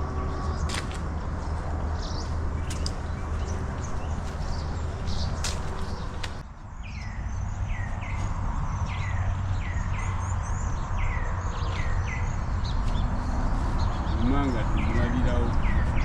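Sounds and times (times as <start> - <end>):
bird chirping: 0.0 - 16.0.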